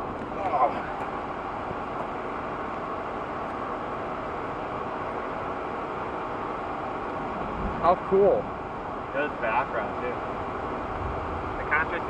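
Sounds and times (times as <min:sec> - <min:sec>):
wind buffeting microphone: 0:07.3 - 0:08.8, 0:10.4 - 0:11.6.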